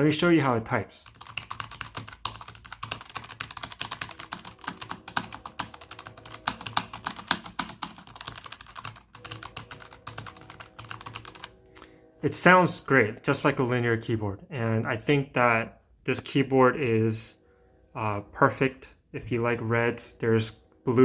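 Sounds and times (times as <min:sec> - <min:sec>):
mechanical keyboard typing: 0:01.0 - 0:11.5.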